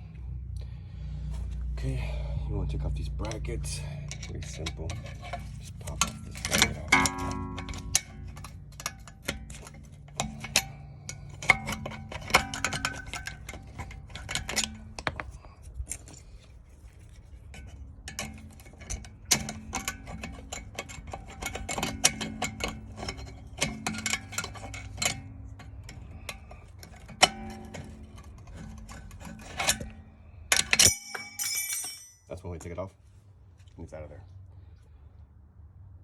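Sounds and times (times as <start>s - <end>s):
metal tools clicking and clinking: 3.2s - 16.2s, 17.1s - 32.5s.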